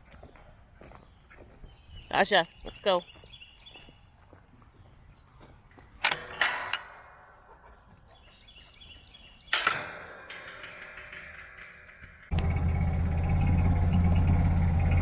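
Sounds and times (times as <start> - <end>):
sharp ringing knocks: 9.4 - 15.0.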